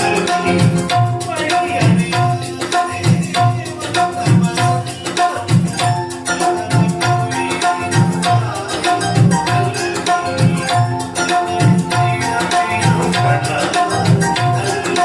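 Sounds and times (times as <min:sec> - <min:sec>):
music with drum beat and bass: 0:00.0 - 0:15.0.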